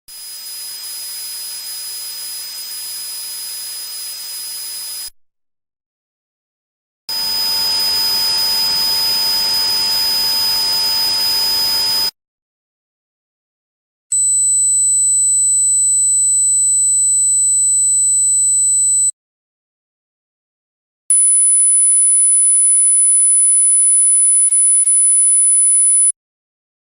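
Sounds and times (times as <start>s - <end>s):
steady hiss with whistling tones: 0.1s - 5.1s
high-pitched ringing tones: 7.1s - 12.1s.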